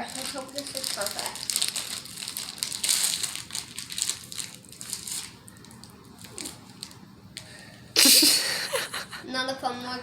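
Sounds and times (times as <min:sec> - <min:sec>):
plastic wrapper crinkling: 0:00.0 - 0:07.1.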